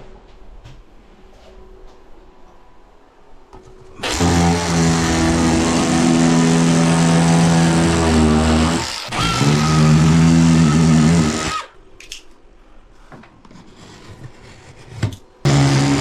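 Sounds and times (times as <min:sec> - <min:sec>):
power tool motor running: 0:04.0 - 0:11.7, 0:15.5 - 0:16.0.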